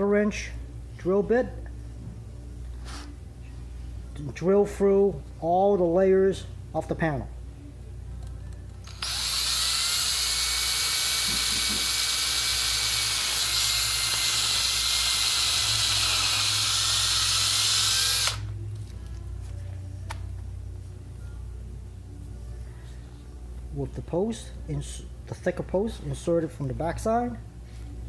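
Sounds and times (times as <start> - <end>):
power drill boring through vinyl: 8.8 - 18.5.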